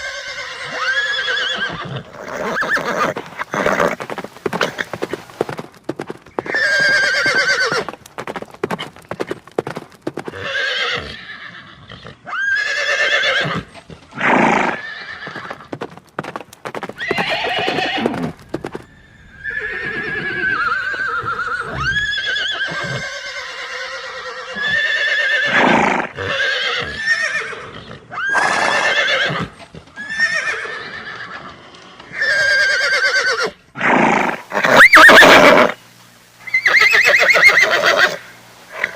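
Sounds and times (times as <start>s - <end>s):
horses whinnying: 0.0s - 16.0s, 16.7s - 35.8s, 36.4s - 38.9s
hooves clip-clopping: 2.1s - 11.1s, 15.1s - 19.0s.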